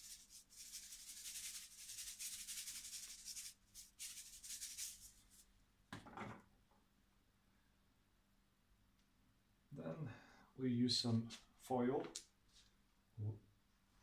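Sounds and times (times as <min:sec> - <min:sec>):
salt grains rattling: 0:00.0 - 0:05.4.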